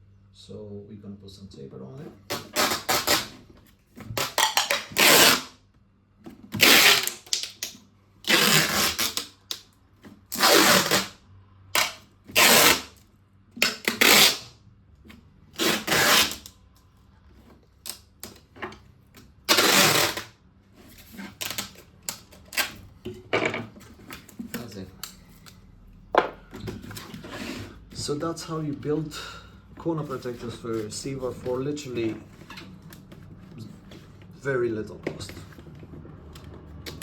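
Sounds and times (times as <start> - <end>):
tape ripping off roll: 2.3 - 5.5, 6.5 - 9.7, 10.3 - 11.2, 11.8 - 13.0, 13.6 - 14.5, 15.6 - 16.6, 19.5 - 20.4, 21.3 - 22.8.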